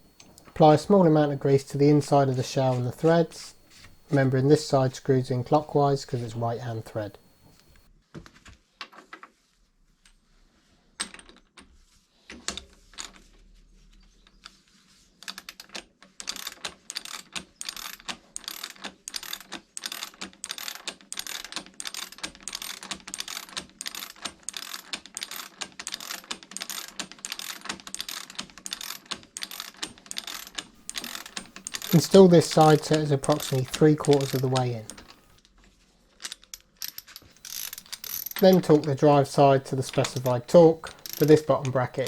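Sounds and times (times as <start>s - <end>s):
ratchet wrench clicking: 16.3s - 35.3s, 36.8s - 38.9s, 39.8s - 41.5s.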